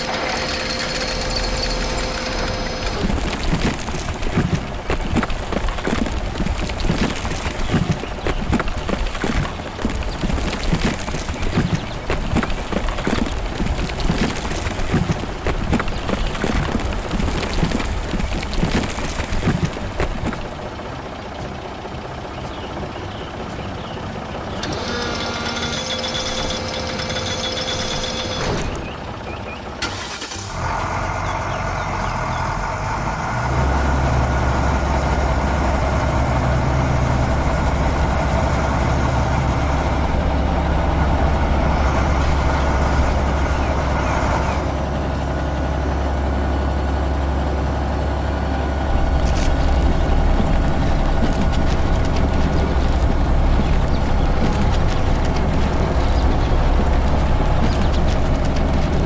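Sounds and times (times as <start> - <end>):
cartoon fast clattering: 0.0 - 20.8, 24.6 - 29.0, 48.9 - 59.0
heavy truck engine rumble: 0.0 - 59.0.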